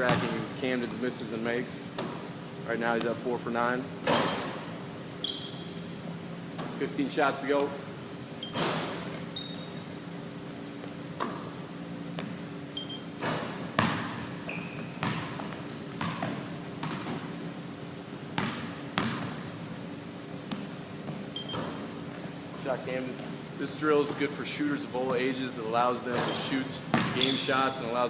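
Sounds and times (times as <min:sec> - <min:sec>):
basketballs bouncing on gym floor: 0:00.0 - 0:01.0, 0:12.1 - 0:12.5, 0:13.2 - 0:17.4, 0:18.3 - 0:19.6, 0:20.4 - 0:22.3, 0:26.8 - 0:27.8
shoe squeaks: 0:05.2 - 0:05.9, 0:08.4 - 0:10.0, 0:12.7 - 0:13.2, 0:14.4 - 0:16.5, 0:21.3 - 0:21.9, 0:26.1 - 0:27.7.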